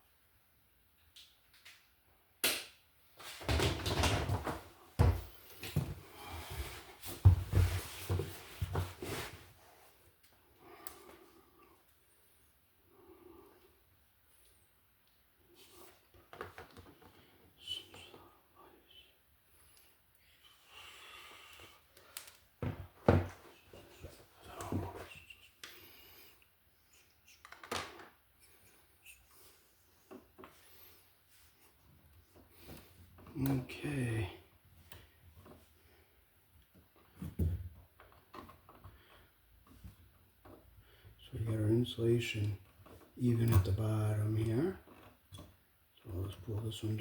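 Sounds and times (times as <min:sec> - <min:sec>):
soft rustling and scraping: 0:04.3 - 0:10.2.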